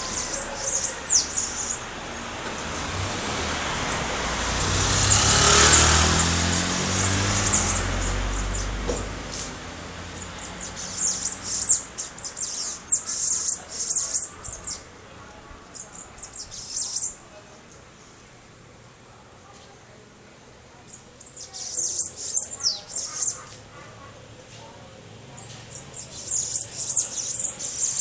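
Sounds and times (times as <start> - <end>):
small bird chirping: 0.0 - 2.3, 4.6 - 9.2, 10.0 - 14.9, 15.7 - 17.2, 20.9 - 23.6, 25.3 - 28.0
car passing: 0.0 - 12.9.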